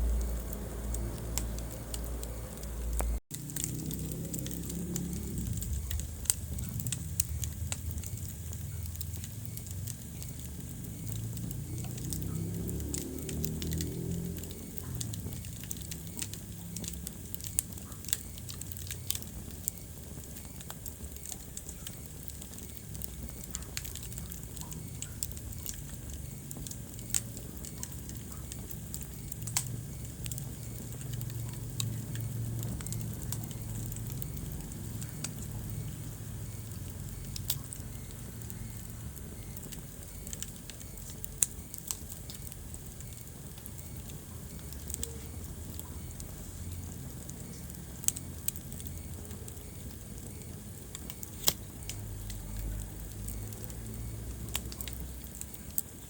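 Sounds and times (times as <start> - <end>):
wood fire crackling and popping: 0.0 - 56.0.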